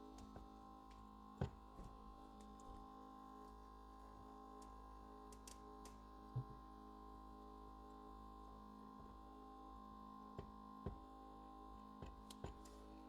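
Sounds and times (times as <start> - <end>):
faint electrical hum: 0.0 - 13.0
faint ticks and click: 4.6 - 6.5.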